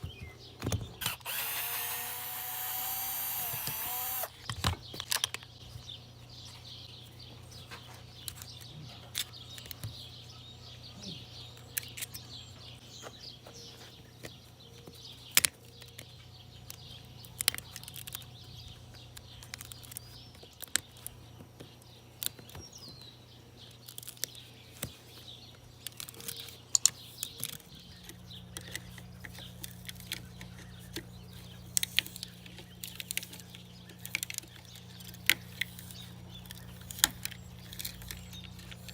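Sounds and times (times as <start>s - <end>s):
tools and parts clicking: 1.0s - 5.5s, 25.5s - 38.9s.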